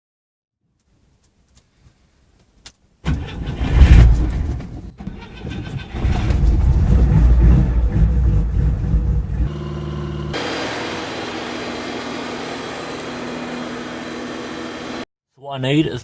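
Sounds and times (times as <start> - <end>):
car engine starting and running: 3.0 - 15.0.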